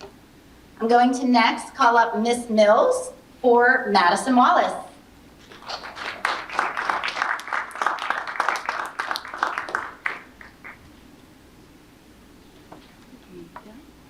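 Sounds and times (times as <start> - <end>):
audience applauding: 5.4 - 10.8.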